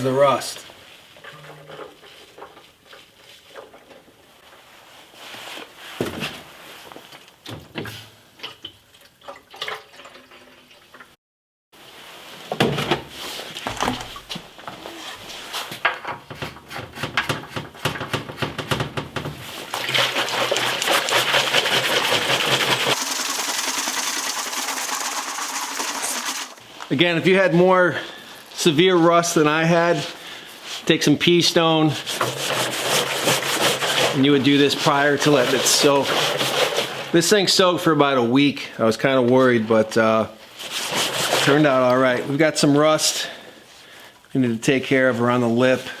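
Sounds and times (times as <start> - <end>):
water pouring into metal tank: 9.1 - 10.9, 19.7 - 26.6.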